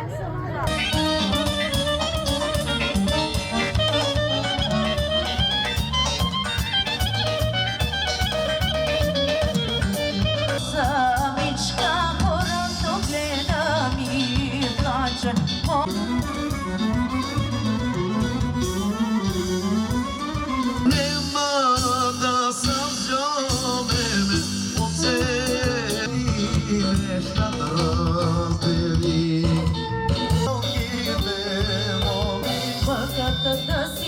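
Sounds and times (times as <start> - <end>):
instruments with steady beat: 0.6 - 34.0
person singing: 10.5 - 17.0, 20.7 - 34.0.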